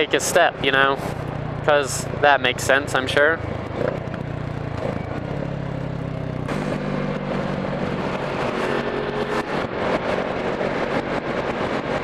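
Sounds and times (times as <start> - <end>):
motorcycle engine running: 0.5 - 12.0
wind rushing over microphone: 6.5 - 12.0.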